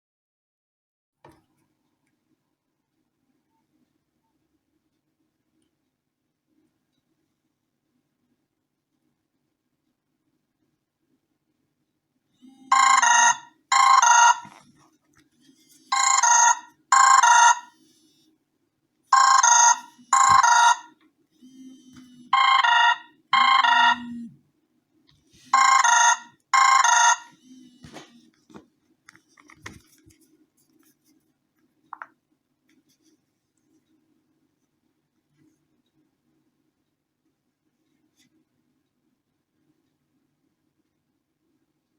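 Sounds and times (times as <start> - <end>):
phone ringtone trilling rings: 12.4 - 14.6, 15.8 - 17.8, 19.1 - 24.3, 25.5 - 28.0.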